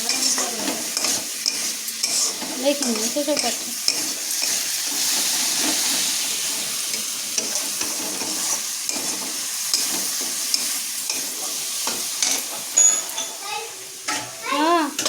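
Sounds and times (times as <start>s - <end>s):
spoon clicking against pan: 0.0s - 4.6s, 8.9s - 13.3s
food sizzling in oil: 0.0s - 15.0s.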